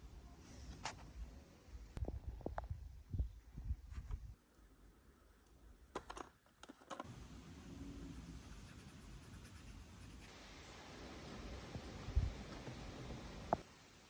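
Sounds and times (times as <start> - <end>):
faint hiss: 7.1 - 14.0.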